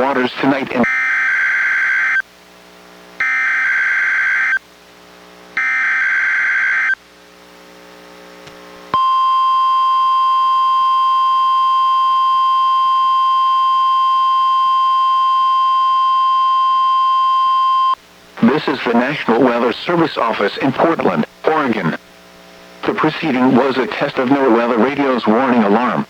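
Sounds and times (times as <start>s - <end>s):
harsh buzzing data bursts: 0.0s - 2.2s, 3.2s - 4.6s, 5.6s - 7.0s
steady alarm tone: 0.8s - 2.2s, 3.2s - 4.6s, 5.6s - 7.0s, 9.0s - 18.0s.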